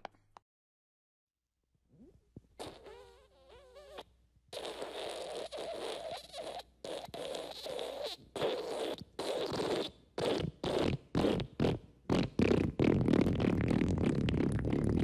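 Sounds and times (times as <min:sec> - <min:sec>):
fart sound effects: 0:02.0 - 0:15.0.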